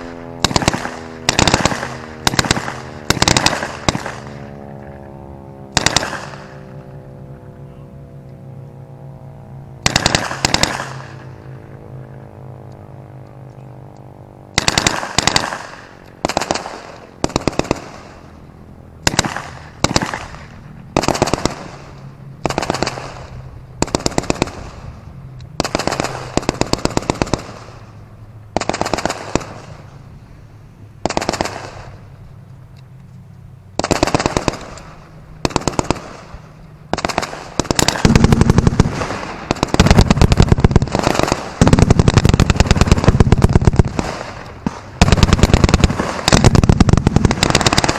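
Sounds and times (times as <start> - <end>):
fireworks cracking: 35.4 - 47.9.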